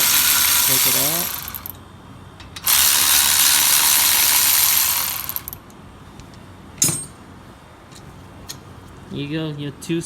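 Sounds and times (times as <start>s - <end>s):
electric ratchet spinning: 0.0s - 1.8s, 2.6s - 5.6s.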